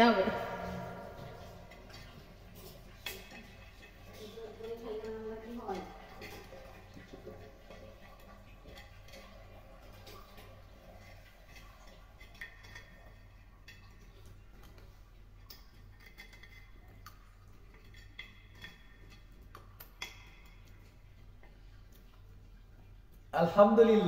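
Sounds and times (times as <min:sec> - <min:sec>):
steady low hum: 0:00.0 - 0:06.8
spoon scraping a pot: 0:00.6 - 0:21.1.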